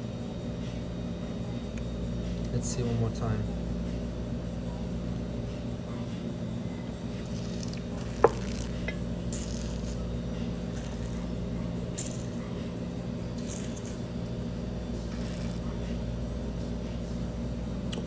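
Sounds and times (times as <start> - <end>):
room hum: 0.0 - 18.0
person slurping from a glass: 7.1 - 12.5, 13.4 - 14.0, 15.0 - 15.8.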